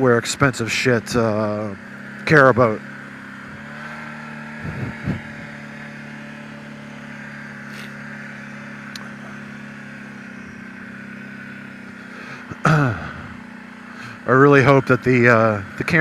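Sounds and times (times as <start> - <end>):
atv engine running: 0.0 - 16.0.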